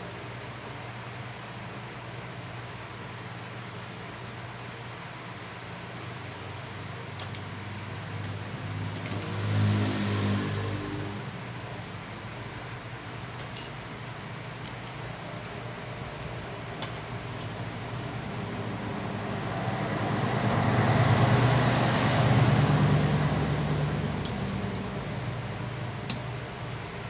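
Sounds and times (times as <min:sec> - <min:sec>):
small parts clicking and clinking: 0:13.4 - 0:13.8, 0:14.6 - 0:15.6, 0:16.8 - 0:17.9
low motor hum: 0:16.0 - 0:27.0.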